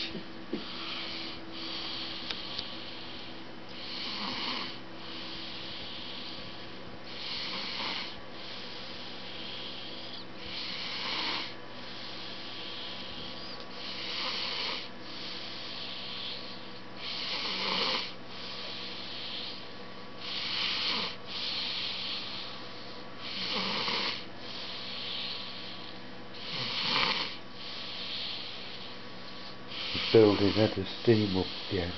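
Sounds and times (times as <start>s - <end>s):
quiet breathing: 0.0s - 31.9s
person snoring: 3.8s - 6.5s, 7.1s - 8.2s, 9.0s - 11.5s, 17.0s - 19.6s, 20.2s - 22.3s, 23.2s - 24.3s, 26.4s - 28.8s, 29.7s - 31.9s.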